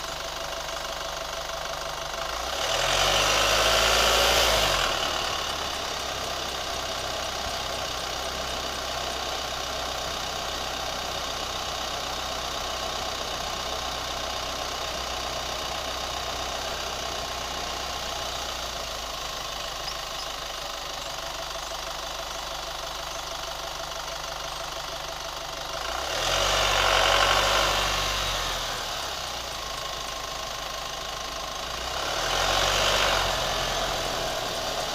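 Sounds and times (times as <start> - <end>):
car engine idling with ticking: 0.0 - 34.9
engine revving: 2.2 - 20.2, 25.7 - 34.9.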